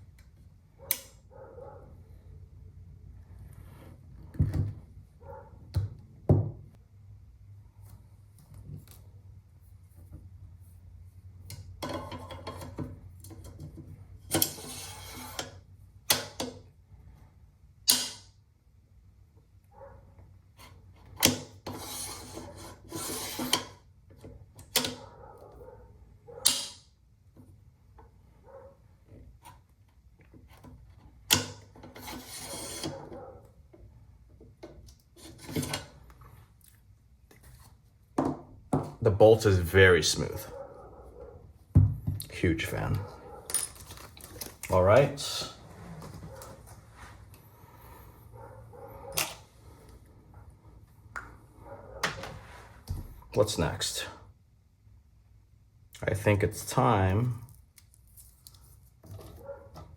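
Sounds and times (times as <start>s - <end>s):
rifle bolt sliding metal on metal: 14.3s - 16.5s, 20.6s - 23.8s, 24.6s - 25.0s, 26.4s - 26.9s, 31.3s - 33.2s, 35.2s - 36.0s
metal parts rattling: 43.5s - 44.6s.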